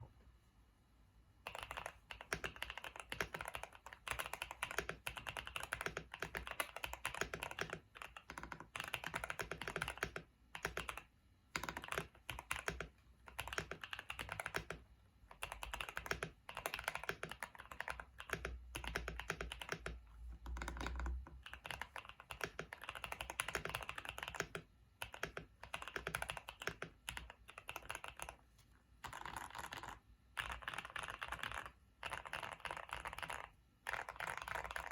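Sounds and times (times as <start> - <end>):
mechanical keyboard typing: 1.4 - 34.9.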